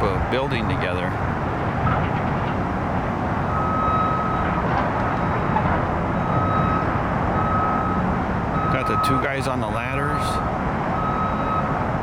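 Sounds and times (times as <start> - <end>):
engines and traffic rumble: 0.0 - 12.0
reversing alarm beeping: 3.5 - 11.8.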